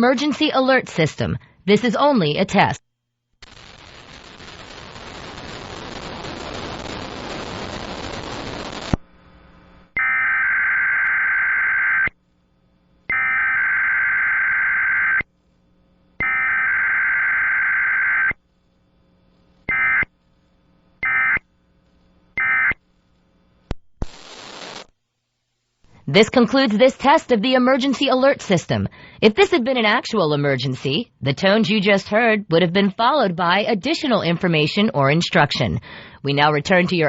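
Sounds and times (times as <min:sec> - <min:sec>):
loud hiss of noise: 0:24.0 - 0:24.9.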